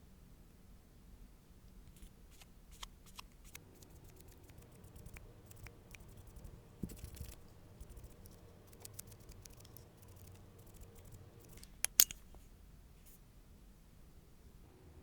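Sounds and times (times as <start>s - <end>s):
small tools clicking and tapping: 6.9s - 12.2s.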